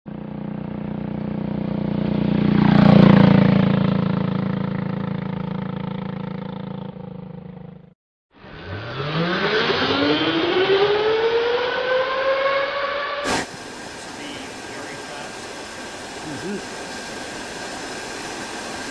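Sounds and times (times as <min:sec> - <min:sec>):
electric go-kart motor whine: 0:08.4 - 0:13.2.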